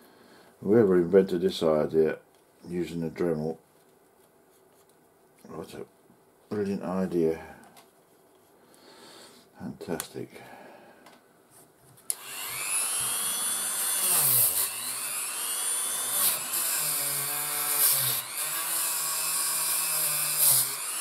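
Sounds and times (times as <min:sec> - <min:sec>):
rotary tool wire brush whining: 0:12.1 - 0:21.0.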